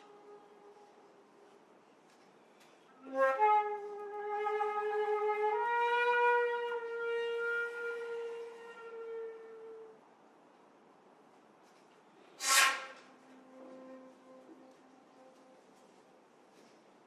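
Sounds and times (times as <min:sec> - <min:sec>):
solo flute: 0:00.0 - 0:01.6, 0:02.9 - 0:10.1, 0:12.4 - 0:16.7.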